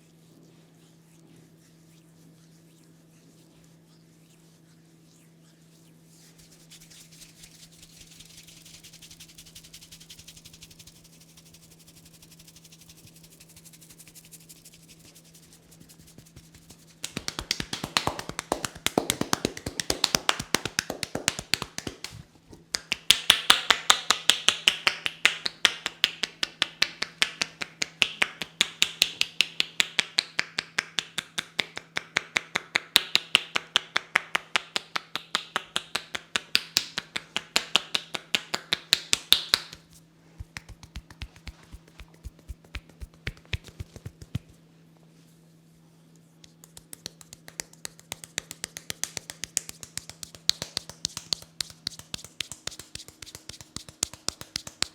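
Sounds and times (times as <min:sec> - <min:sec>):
hands tapping and slapping on head: 0:15.8 - 0:44.6, 0:46.4 - 0:54.9.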